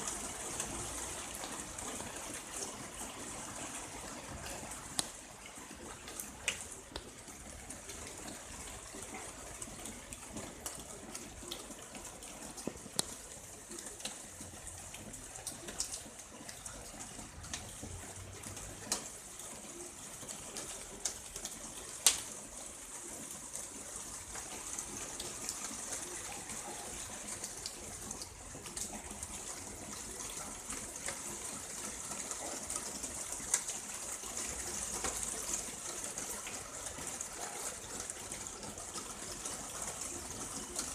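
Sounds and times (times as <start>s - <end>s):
raindrops ticking: 0.0s - 40.9s.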